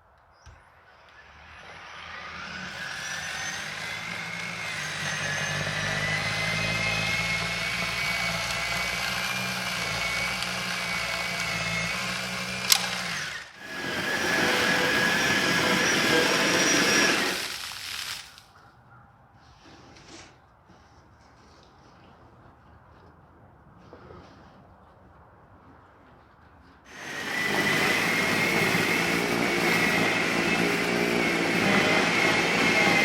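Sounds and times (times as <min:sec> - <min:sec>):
electric snow blower running: 0:01.6 - 0:18.4, 0:26.9 - 0:33.0.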